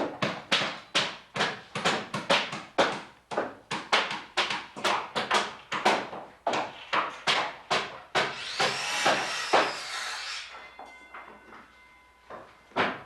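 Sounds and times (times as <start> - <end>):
hammer striking wood: 0.0 - 9.9.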